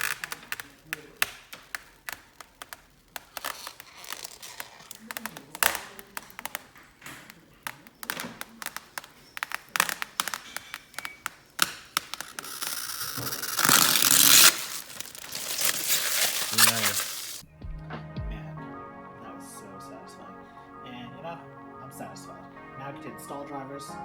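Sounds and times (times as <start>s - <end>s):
plastic film peeling: 0.0s - 17.4s.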